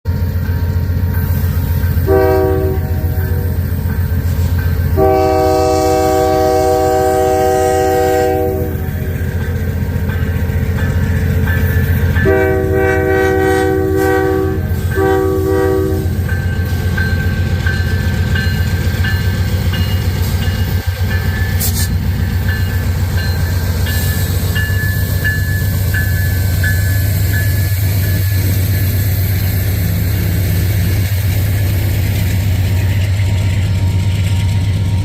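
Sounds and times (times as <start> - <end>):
freight train rumbling: 0.0 - 35.0
locomotive air horn blasts: 2.0 - 3.4, 4.9 - 8.9, 12.2 - 16.3.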